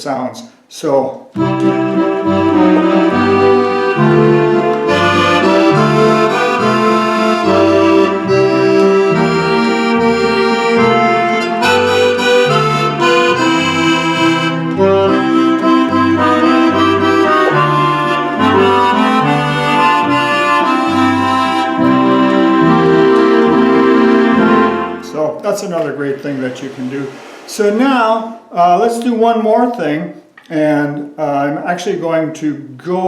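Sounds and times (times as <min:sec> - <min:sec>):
accordion playing chords and bass: 0:01.4 - 0:25.2
orchestral strings: 0:01.5 - 0:28.6.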